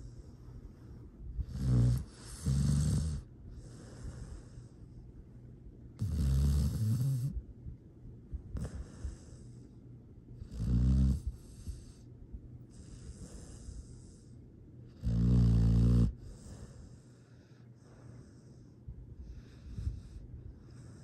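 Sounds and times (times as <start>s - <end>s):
dog snoring: 0.0s - 4.7s, 6.0s - 7.4s, 8.5s - 9.6s, 10.4s - 12.0s, 12.7s - 14.3s, 14.9s - 18.6s
dog breathing softly: 0.0s - 5.4s, 6.0s - 10.5s, 11.1s - 15.0s, 16.0s - 21.0s.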